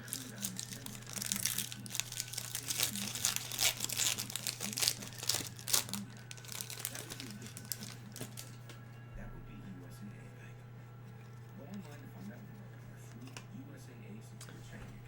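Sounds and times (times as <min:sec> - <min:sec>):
plastic wrapping crinkling and tearing: 0:00.0 - 0:08.7
steady low hum: 0:00.0 - 0:15.0.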